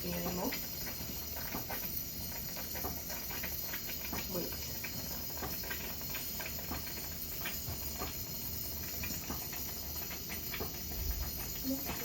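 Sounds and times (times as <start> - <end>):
small crackles and clicks: 0.0 - 12.0.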